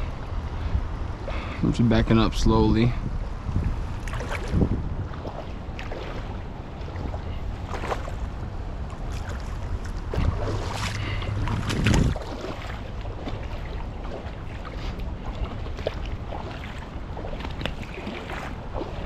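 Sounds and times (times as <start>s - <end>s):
river water moving: 0.0s - 19.0s
wind buffeting microphone: 0.0s - 19.0s
knocks and splashes: 4.0s - 19.0s.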